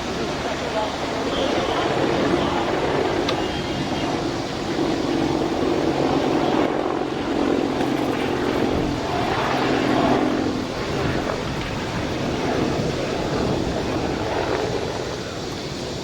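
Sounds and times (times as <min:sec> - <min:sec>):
helicopter turbine and rotor: 0:00.0 - 0:16.0.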